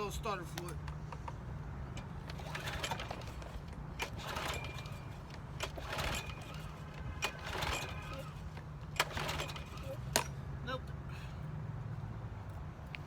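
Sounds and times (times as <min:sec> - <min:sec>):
engine turning over rasping: 0:02.0 - 0:10.3
recoil starter pull: 0:02.0 - 0:10.3.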